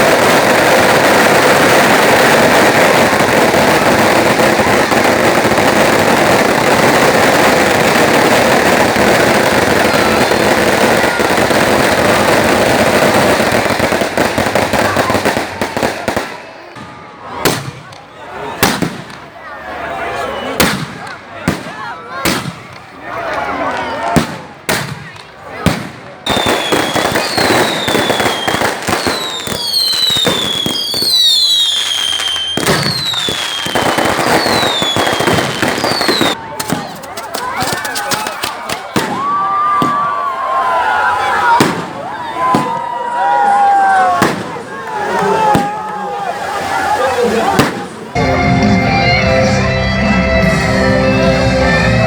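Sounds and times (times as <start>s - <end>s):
firecrackers crackling: 0.0s - 19.4s, 20.6s - 48.4s
falling fireworks whistles: 26.2s - 40.1s.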